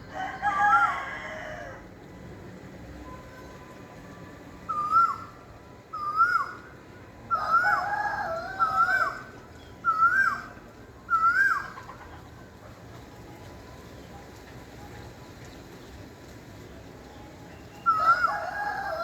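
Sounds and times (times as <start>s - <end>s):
lower longer bird call: 4.7s - 11.9s.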